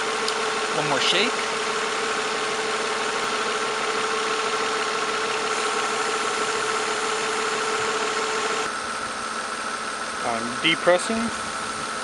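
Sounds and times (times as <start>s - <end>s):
car engine idling: 0.0s - 12.0s.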